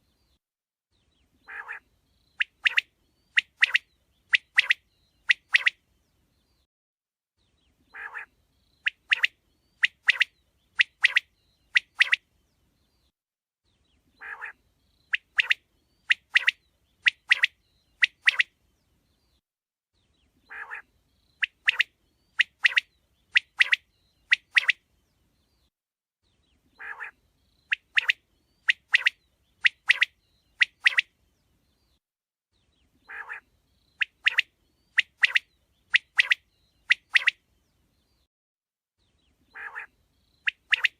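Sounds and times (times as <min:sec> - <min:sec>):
quail calling: 0:01.4 - 0:01.8, 0:07.9 - 0:08.3, 0:14.2 - 0:14.6, 0:20.5 - 0:22.8, 0:26.8 - 0:31.0, 0:33.1 - 0:37.4, 0:39.5 - 0:39.9.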